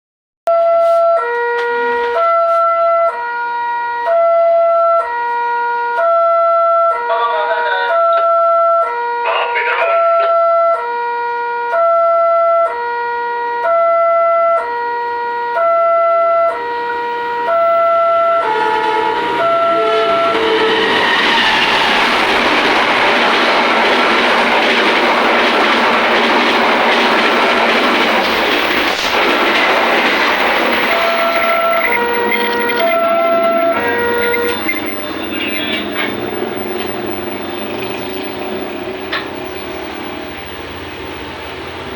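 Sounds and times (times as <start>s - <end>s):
level crossing two-tone alarm: 10.0s - 23.2s, 30.8s - 38.9s
locomotive horn chord: 12.7s - 23.7s, 30.8s - 36.2s
train passing at speed: 14.6s - 41.9s
wavering pitched sound: 16.2s - 23.9s, 30.5s - 40.8s.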